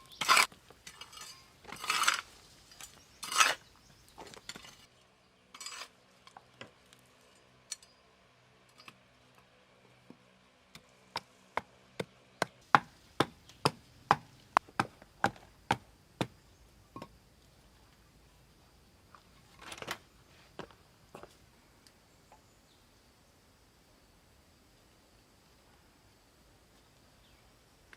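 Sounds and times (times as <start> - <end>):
blade chopping on wood: 11.2 - 16.4.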